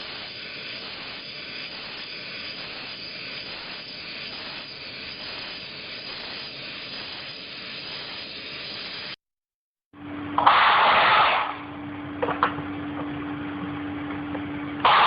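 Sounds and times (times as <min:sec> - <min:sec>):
loud jet of steam: 0:00.0 - 0:09.2
steam cleaner hissing: 0:00.0 - 0:09.2
steam cleaner humming: 0:00.0 - 0:09.2, 0:10.4 - 0:15.0.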